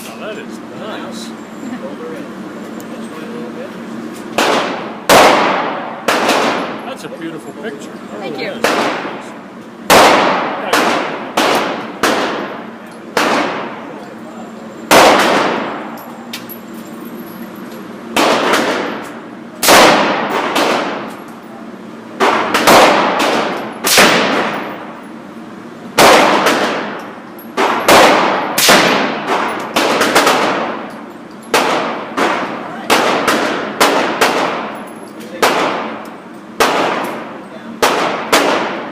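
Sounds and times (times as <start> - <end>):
rifle shots echoing: 4.4 - 6.8, 8.6 - 9.2, 9.9 - 13.9, 14.9 - 15.9, 18.1 - 19.0, 19.6 - 21.1, 22.2 - 24.9, 26.0 - 30.9, 31.5 - 34.8, 35.4 - 36.0, 36.6 - 38.9.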